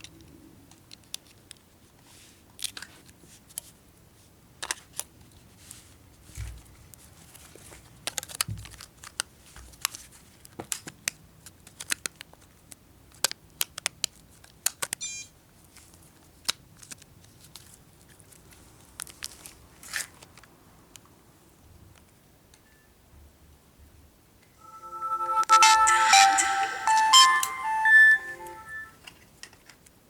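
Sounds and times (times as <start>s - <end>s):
short electronic beep: 24.6s - 28.9s.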